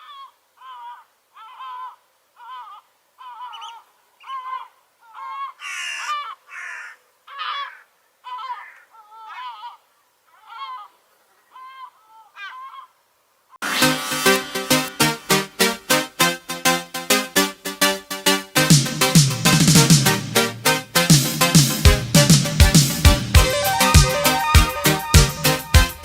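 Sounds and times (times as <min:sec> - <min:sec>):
gull calling: 0:00.0 - 0:12.9
loud electronic music: 0:13.6 - 0:26.0.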